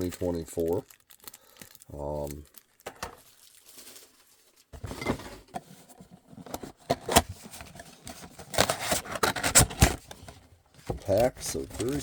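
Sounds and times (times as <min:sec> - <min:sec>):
packaging crackling and rustling: 0:00.0 - 0:12.0.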